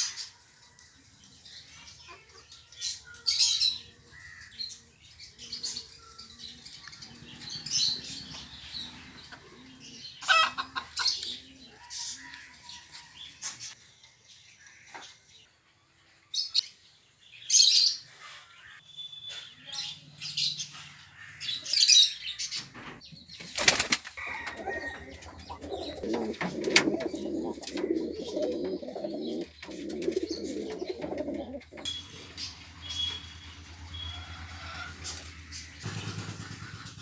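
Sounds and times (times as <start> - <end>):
birds chirping and squawking: 0.0 - 13.8, 17.5 - 37.0
wings flapping: 23.4 - 28.7, 35.0 - 37.0.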